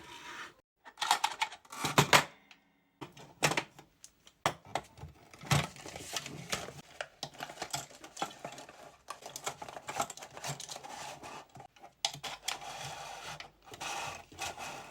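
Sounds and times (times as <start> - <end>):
packaging rustling: 5.3 - 10.8.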